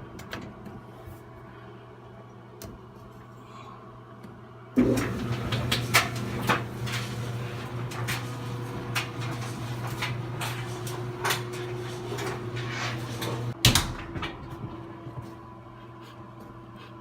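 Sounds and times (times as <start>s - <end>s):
dryer motor hum: 0.0s - 17.0s
dryer drum tumbling and knocking: 4.8s - 15.3s.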